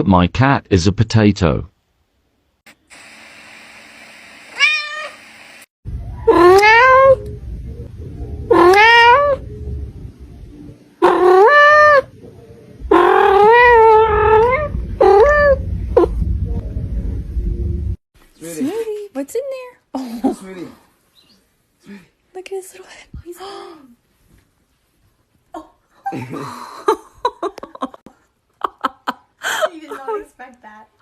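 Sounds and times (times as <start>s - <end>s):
cat meowing: 4.6s - 5.2s, 6.3s - 7.2s, 8.5s - 9.4s, 11.0s - 12.1s, 12.9s - 15.6s.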